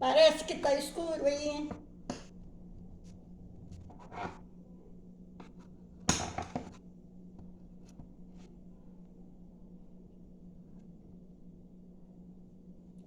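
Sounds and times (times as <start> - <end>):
knife cutting bread: 3.7 - 4.5
scraping and knocks: 5.4 - 6.8.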